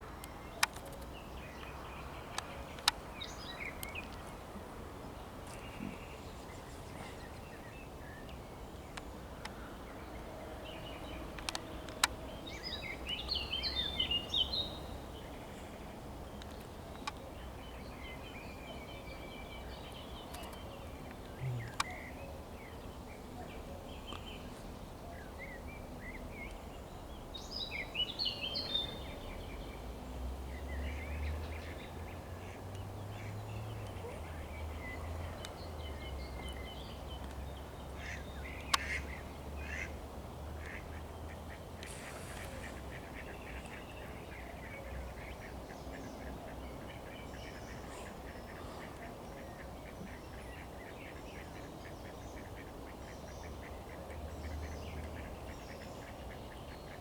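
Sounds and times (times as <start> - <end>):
songbird singing: 0.0 - 57.0
low outdoor rumble: 21.2 - 22.7
faint bird chirps: 21.3 - 22.2.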